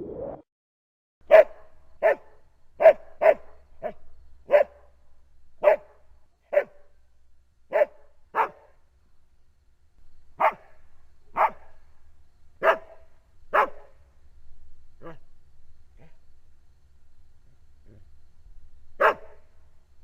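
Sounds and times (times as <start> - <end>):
dog barking: 1.3 - 4.9, 5.6 - 6.9, 7.7 - 8.7, 10.4 - 11.8, 12.6 - 14.0, 15.0 - 15.2, 19.0 - 19.4.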